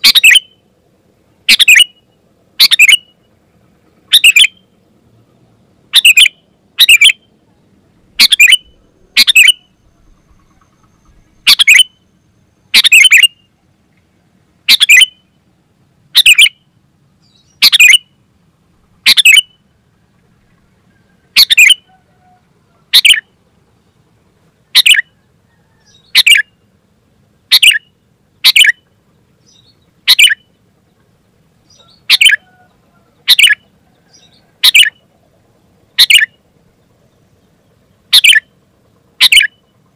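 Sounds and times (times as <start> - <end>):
bulbul chirping: 0.0 - 0.6, 1.5 - 3.2, 4.1 - 4.6, 5.9 - 7.3, 8.2 - 12.0, 12.7 - 13.5, 14.7 - 15.3, 16.2 - 16.6, 17.3 - 18.2, 19.0 - 19.6, 21.4 - 21.9, 22.9 - 23.3, 27.5 - 28.8, 29.5 - 30.5, 33.2 - 33.6, 34.2 - 35.0, 36.0 - 36.4, 38.1 - 38.5, 39.2 - 39.7.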